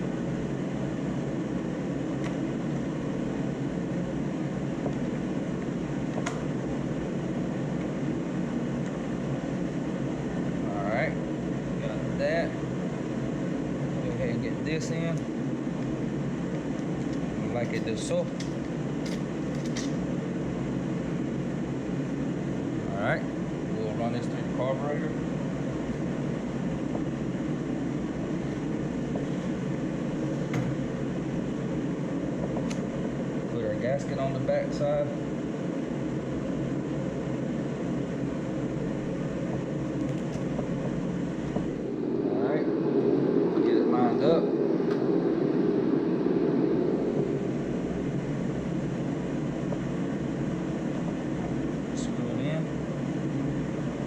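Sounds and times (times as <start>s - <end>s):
low droning noise: 0.0s - 54.0s
steady rushing noise: 38.4s - 54.0s.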